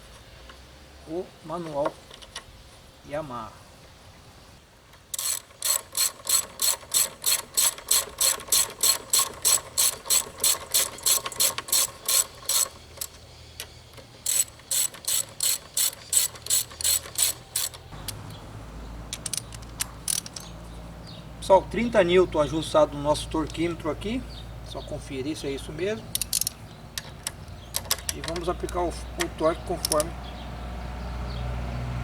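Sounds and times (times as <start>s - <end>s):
ratcheting wrench clicking: 5.1s - 18.4s, 19.1s - 20.5s, 26.1s - 30.2s.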